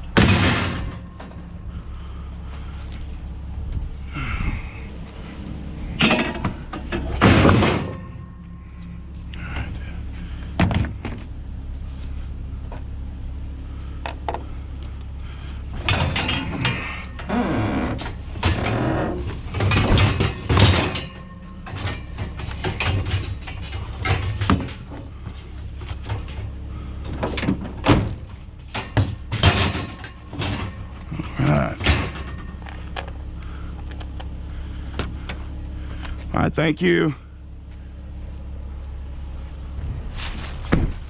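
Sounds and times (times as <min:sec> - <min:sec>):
scrap metal clanking and rattling: 0:00.0 - 0:03.2, 0:04.2 - 0:11.3, 0:15.2 - 0:36.1, 0:39.8 - 0:41.0
steady low hum: 0:00.0 - 0:41.0.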